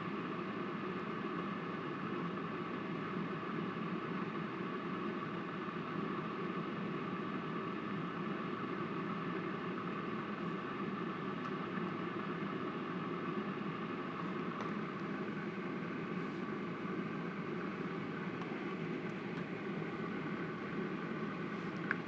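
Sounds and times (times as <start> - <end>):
mechanical hum and hiss: 0.0 - 22.0.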